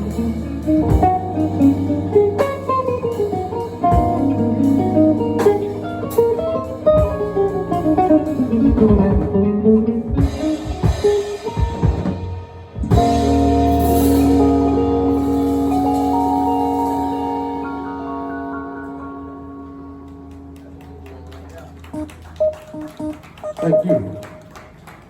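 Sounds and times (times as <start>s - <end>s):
drum kit hits: 0.0s - 17.8s
guitar melody: 0.0s - 24.5s.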